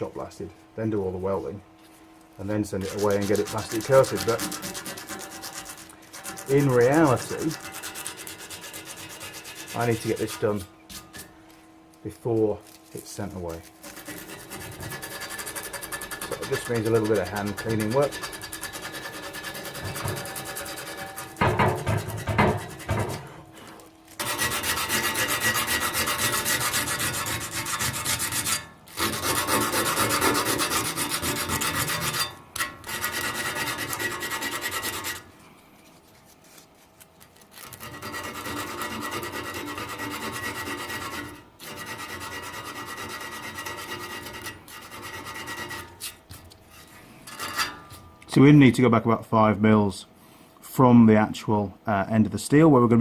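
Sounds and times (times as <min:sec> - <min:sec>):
abrasive scrubbing on steel tube: 0:02.4 - 0:11.2, 0:12.6 - 0:35.3, 0:37.4 - 0:47.9.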